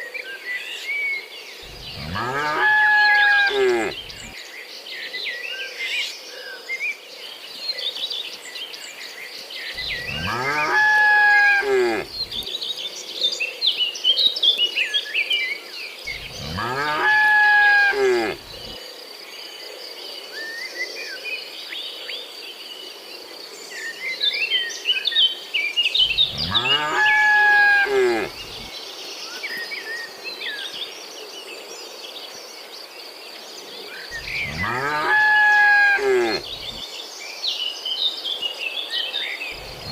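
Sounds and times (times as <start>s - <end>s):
birds chirping: 1.6s - 4.4s, 9.8s - 12.5s, 16.1s - 18.8s, 26.0s - 28.7s, 34.1s - 36.9s, 39.5s - 39.9s
cattle mooing: 1.7s - 4.3s, 9.8s - 12.4s, 16.1s - 18.8s, 26.0s - 28.7s, 34.2s - 36.8s, 39.6s - 39.9s.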